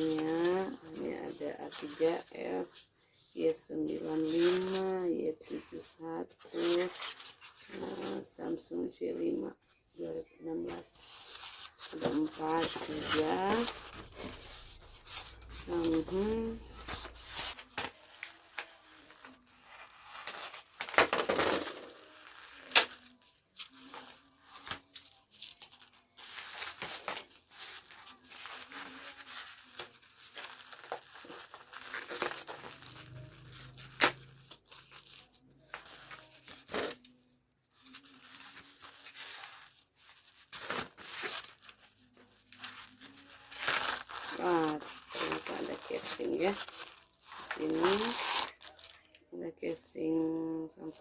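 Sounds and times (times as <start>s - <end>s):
packaging ripping and crinkling: 11.0s - 37.1s, 37.7s - 49.2s.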